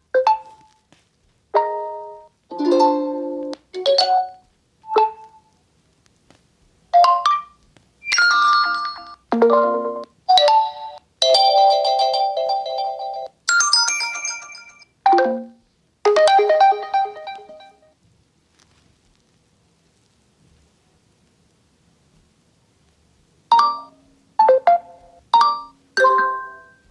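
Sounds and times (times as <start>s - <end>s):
phone ringtone chiming melodies: 7.0s - 15.6s, 16.2s - 17.8s, 23.5s - 26.9s.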